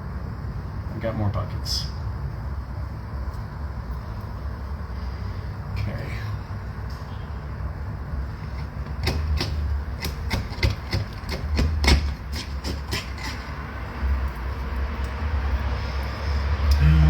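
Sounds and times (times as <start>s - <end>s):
tool clicking and knocking: 8.4s - 13.6s.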